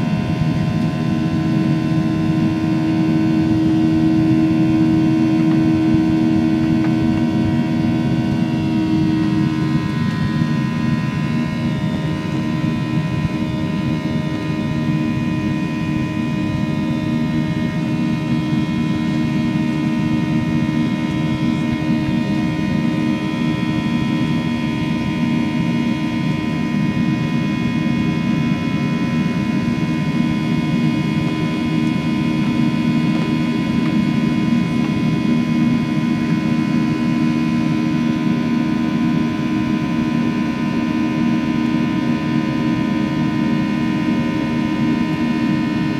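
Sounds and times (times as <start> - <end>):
jet engines rumbling in cabin: 0.0 - 45.9
steady whining tones: 0.0 - 45.9.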